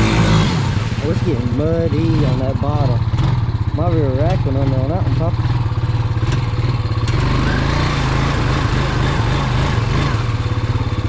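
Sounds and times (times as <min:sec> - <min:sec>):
atv engine running under load: 0:00.0 - 0:11.0.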